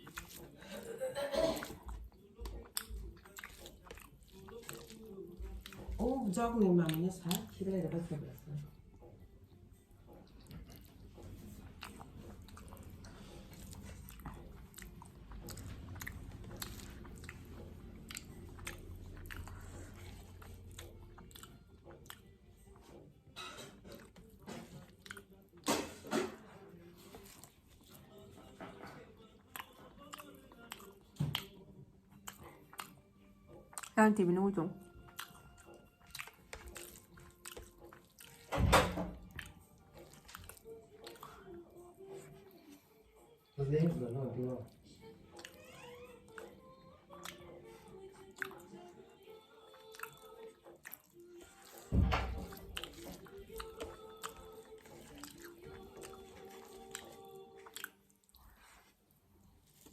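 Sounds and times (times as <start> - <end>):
mouth clicks and wet smacks: 0.0 - 0.6, 1.6 - 6.2, 6.8 - 8.0, 10.1 - 23.0, 23.9 - 26.4, 29.5 - 34.0, 35.1 - 41.6, 45.3 - 48.8, 49.7 - 58.8
chewing crunchy food: 0.0 - 59.9.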